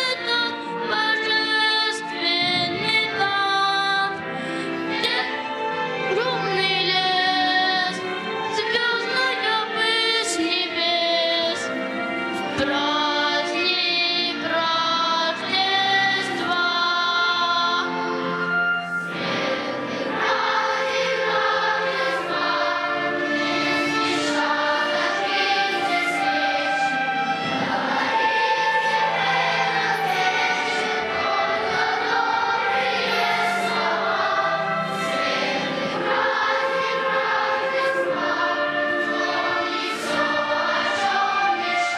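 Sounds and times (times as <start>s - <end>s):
children's choir singing: 0.0s - 41.9s
musical accompaniment: 0.0s - 41.9s.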